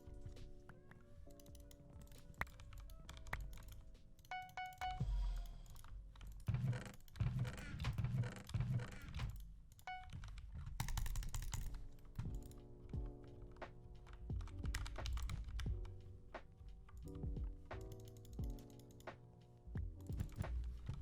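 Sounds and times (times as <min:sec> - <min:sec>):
background music: 0:00.0 - 0:21.0
mechanical keyboard key clicks: 0:01.4 - 0:07.4, 0:09.2 - 0:12.6.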